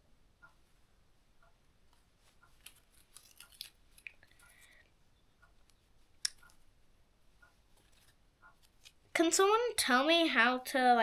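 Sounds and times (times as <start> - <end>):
small object clicking and rustling: 1.9 - 4.9, 7.7 - 9.0.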